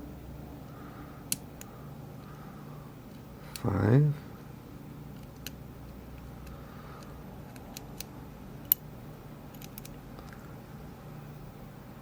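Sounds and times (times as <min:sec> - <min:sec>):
faint low hum: 0:00.0 - 0:12.0
lock pick clicking in lock: 0:09.5 - 0:10.0.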